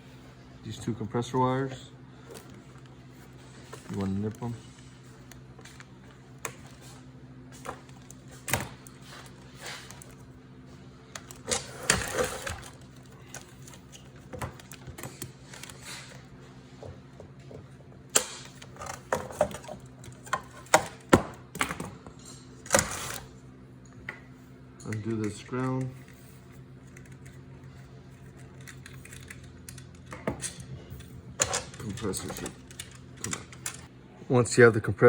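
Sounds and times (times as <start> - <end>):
parts clattering: 28.2 - 33.9
wire cutters clicking: 28.3 - 33.9.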